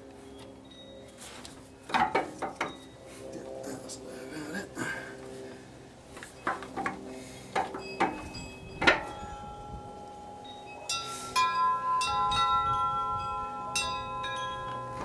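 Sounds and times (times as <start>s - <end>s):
wind chimes ringing: 0.6s - 3.0s, 7.6s - 15.0s.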